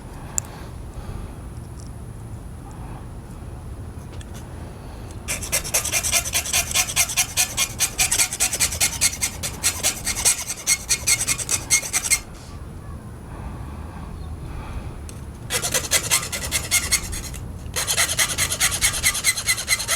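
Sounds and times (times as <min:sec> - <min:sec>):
hand file rasping on metal: 0:05.3 - 0:12.4, 0:15.5 - 0:19.9.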